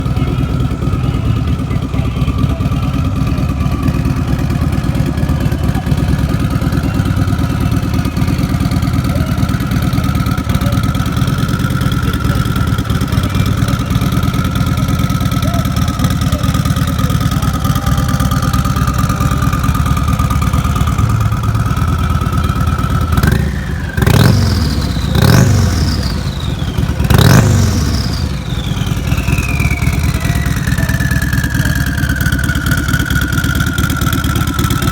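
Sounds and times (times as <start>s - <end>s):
engine revving: 0.0s - 34.9s
motorcycle engine idling: 0.0s - 34.9s
turbo whistle: 28.6s - 30.9s.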